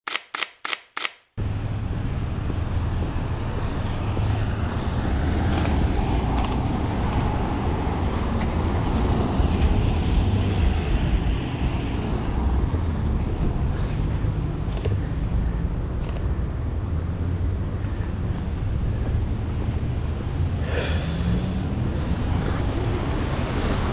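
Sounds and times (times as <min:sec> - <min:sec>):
short clicks: 0:00.0 - 0:01.3
traffic rumble: 0:01.4 - 0:23.9.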